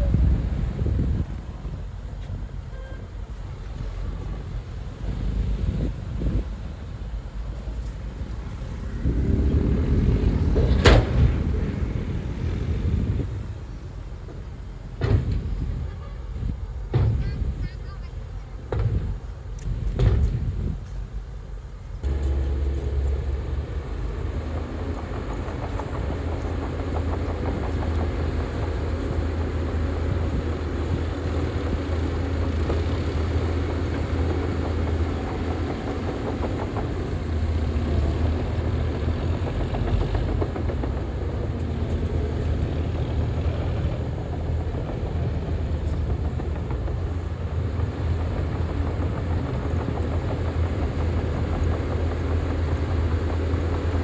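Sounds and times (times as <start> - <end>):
bulldozer diesel engine running: 0.0 - 54.0
machinery rattling: 22.0 - 54.0.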